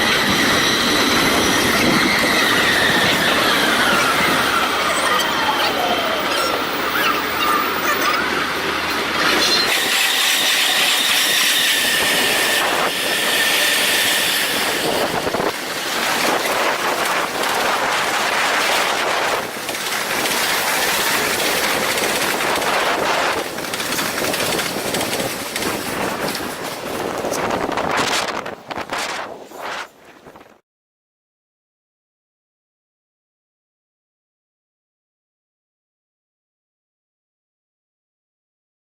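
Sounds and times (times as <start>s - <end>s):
wheels clacking over rail joints: 0.0s - 28.0s
train passing: 0.0s - 29.6s.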